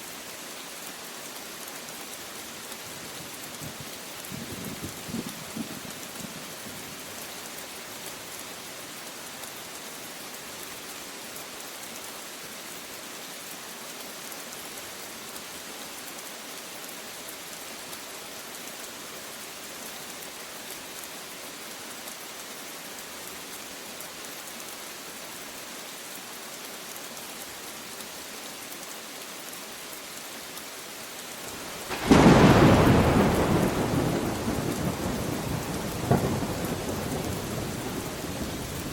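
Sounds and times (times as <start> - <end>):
heavy rain hissing: 0.0 - 38.9
thunderclap rumbling: 31.8 - 38.9.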